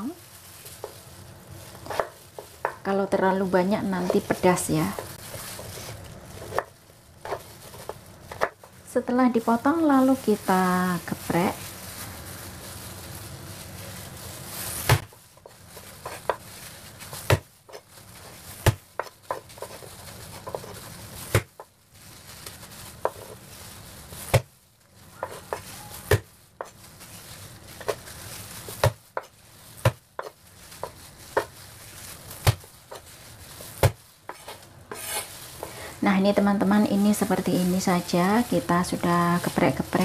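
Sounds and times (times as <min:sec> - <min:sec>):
sharp knocks smashing ginger: 0:32.4 - 0:32.6.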